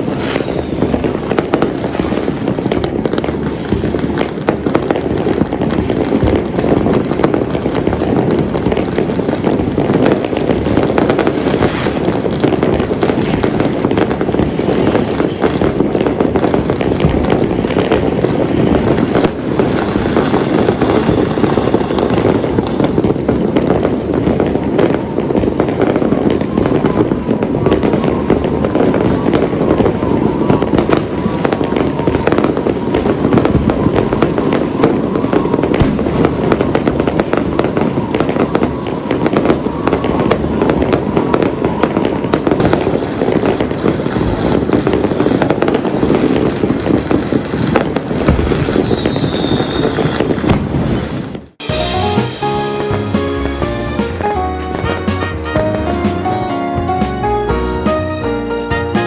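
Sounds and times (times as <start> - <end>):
fireworks and firecrackers banging: 0.0 - 59.0.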